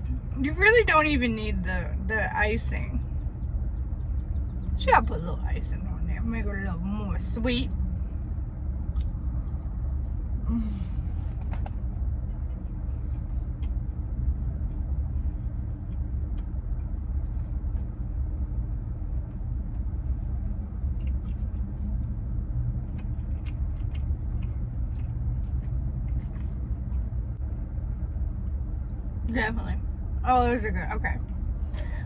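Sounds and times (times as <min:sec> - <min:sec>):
steady low rumble: 0:00.0 - 0:32.0
chewing mouth clicks: 0:08.8 - 0:10.2, 0:20.6 - 0:27.2.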